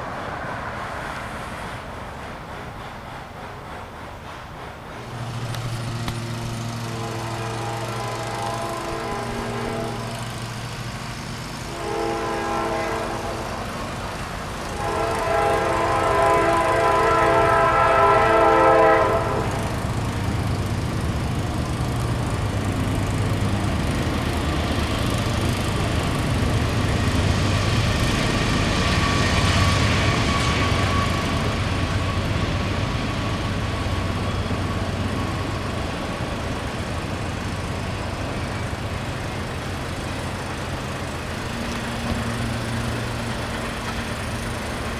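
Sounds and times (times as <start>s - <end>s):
low train engine rumble: 0.0s - 44.9s
wheels on rails: 0.0s - 44.9s
locomotive air horn chord: 5.2s - 20.2s.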